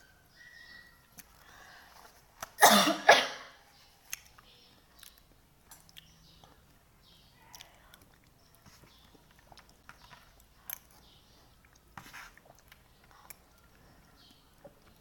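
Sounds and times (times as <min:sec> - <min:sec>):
faint wet chewing: 0:04.0 - 0:06.8, 0:07.4 - 0:15.0.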